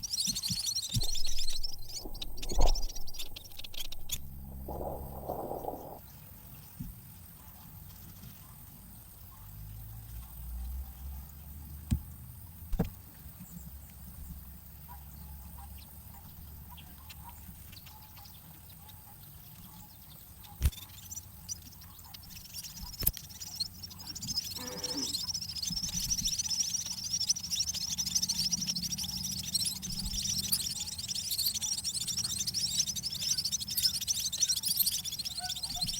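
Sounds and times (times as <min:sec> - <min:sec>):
nestlings chirping rapidly: 0:00.0 - 0:06.0, 0:20.9 - 0:35.9.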